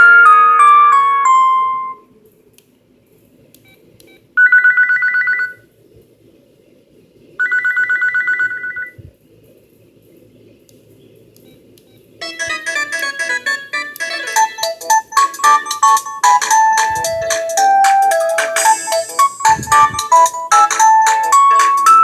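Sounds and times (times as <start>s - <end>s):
melodic ringtone: 0.0s - 2.0s, 12.2s - 22.0s
two-tone electronic trill: 0.0s - 2.0s, 12.2s - 22.0s.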